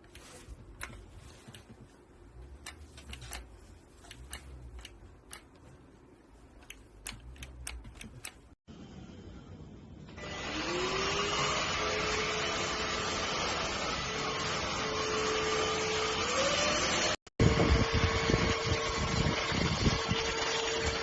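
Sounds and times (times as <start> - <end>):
light clicks and taps: 0.0 - 8.6
handheld vacuum motor whining: 10.2 - 21.0.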